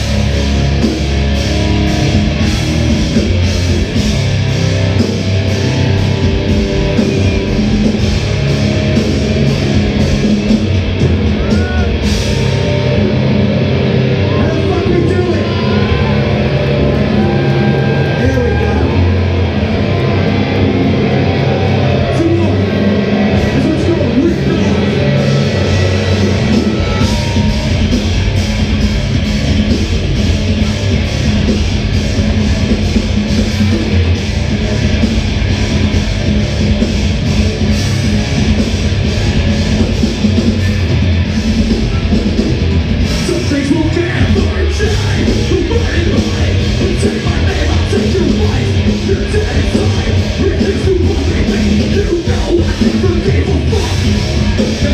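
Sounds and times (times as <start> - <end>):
heavy rock band playing live: 0.0 - 54.9
person singing: 43.2 - 54.9.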